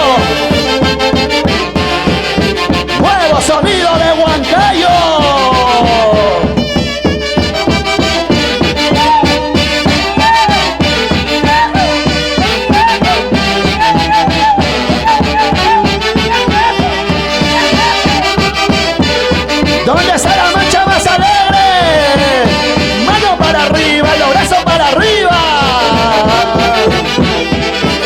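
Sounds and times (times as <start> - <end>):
dance orchestra music: 0.0 - 28.0.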